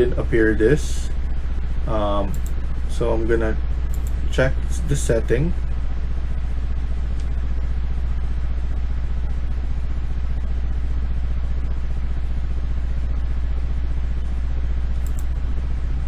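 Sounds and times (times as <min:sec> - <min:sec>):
low hum: 0:00.0 - 0:16.0.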